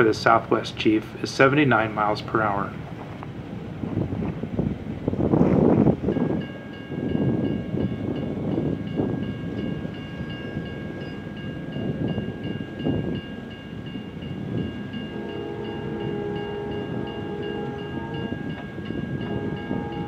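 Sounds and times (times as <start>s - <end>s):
train wheels rumbling on track: 0.0s - 20.0s
pulsing high ringing tone: 6.1s - 20.0s.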